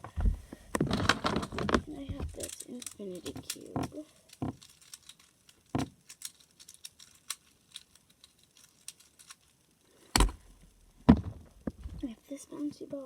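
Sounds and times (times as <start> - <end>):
plastic cube clicking: 0.8 - 9.5
plastic knock: 11.1 - 12.0.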